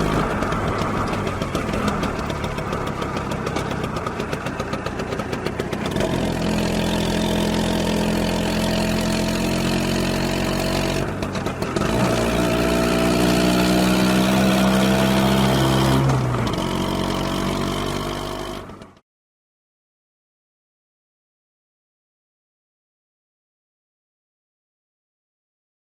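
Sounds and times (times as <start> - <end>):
motor scooter engine running: 0.0 - 19.0.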